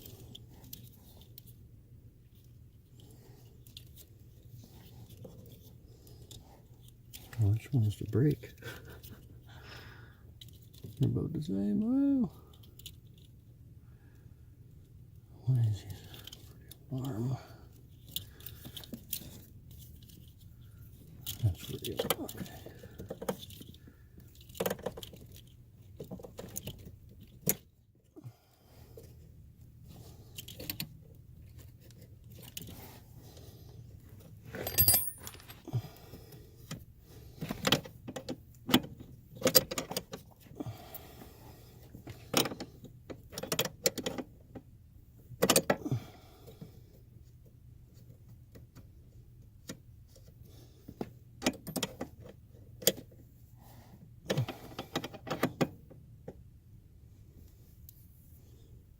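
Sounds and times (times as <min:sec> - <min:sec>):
faint low hum: 0:00.0 - 0:58.9
metal tools clicking and knocking: 0:34.5 - 0:35.7.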